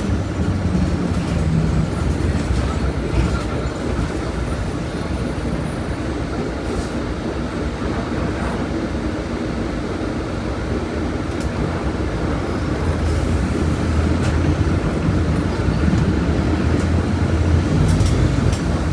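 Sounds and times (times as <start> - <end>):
bus diesel engine rumbling: 0.0 - 18.9.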